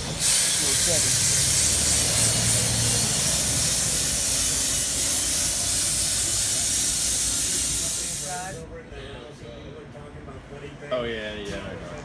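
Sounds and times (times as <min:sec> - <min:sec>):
loud hissing spray: 0:00.0 - 0:08.6.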